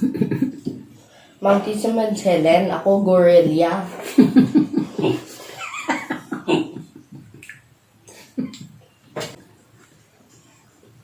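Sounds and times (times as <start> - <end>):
person's voice: 1.4 - 3.9.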